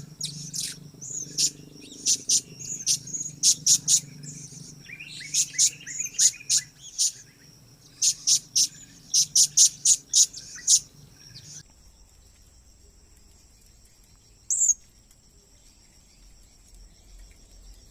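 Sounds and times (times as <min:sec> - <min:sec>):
high insect-like trill: 0:00.0 - 0:11.6
parrots calling: 0:00.0 - 0:11.6.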